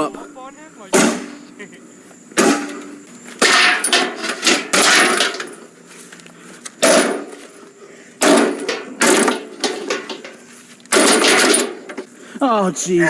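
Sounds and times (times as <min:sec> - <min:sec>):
heavy crashing blows on lawnmower: 0:00.9 - 0:01.6, 0:02.3 - 0:06.1, 0:06.8 - 0:12.1
small knocks: 0:08.2 - 0:12.1.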